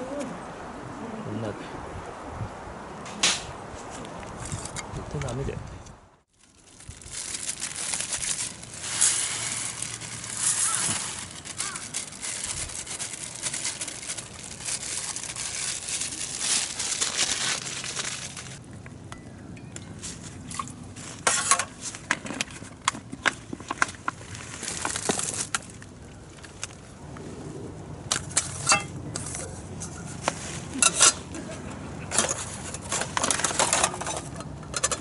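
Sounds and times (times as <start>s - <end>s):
plastic packaging crinkling: 6.3s - 18.6s, 23.9s - 25.9s.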